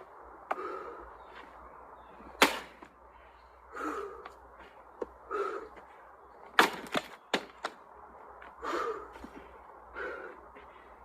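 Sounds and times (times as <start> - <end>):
axe cracking into log: 2.4 - 2.9, 6.6 - 7.5.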